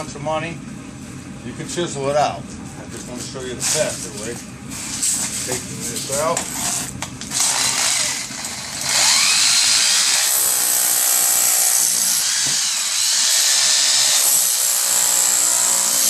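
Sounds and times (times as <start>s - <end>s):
power tool grinding mortar: 5.8s - 16.0s.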